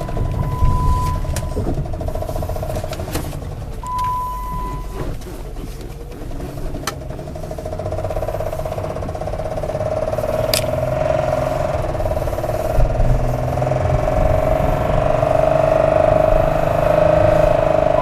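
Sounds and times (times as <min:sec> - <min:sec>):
steady beep: 0:00.0 - 0:01.6, 0:03.8 - 0:04.9
car engine running: 0:00.0 - 0:18.0
sharp clicks: 0:10.4 - 0:11.0.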